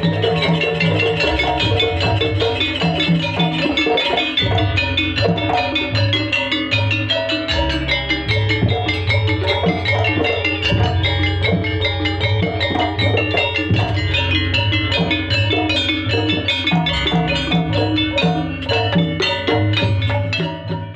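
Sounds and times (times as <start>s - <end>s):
drumming: 0.0s - 20.9s
tuned metal percussion: 0.0s - 20.9s.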